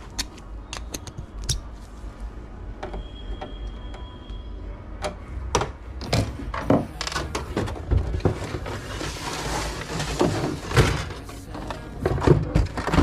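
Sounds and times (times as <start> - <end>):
plastic parts clicking and knocking: 0.0 - 1.7, 12.0 - 13.0.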